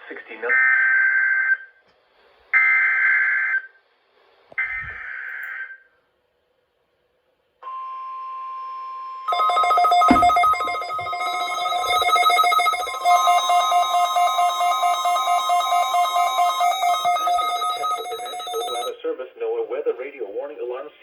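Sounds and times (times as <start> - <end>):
ringing mix of tones: 9.3 - 18.9
steady alert tone: 9.3 - 18.9.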